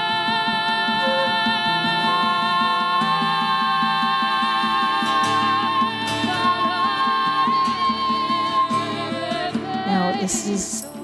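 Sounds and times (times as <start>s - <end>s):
person singing: 0.0s - 11.0s.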